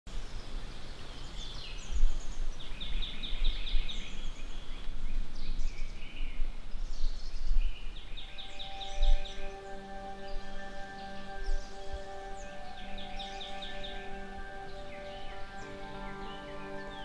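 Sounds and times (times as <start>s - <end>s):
songbirds singing: 0.1s - 17.0s.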